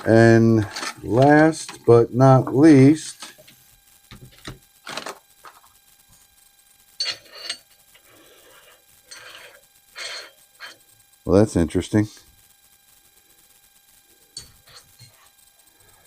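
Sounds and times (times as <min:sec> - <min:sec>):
metal scraping on metal: 0:07.0 - 0:07.8, 0:08.6 - 0:10.8, 0:14.4 - 0:15.3.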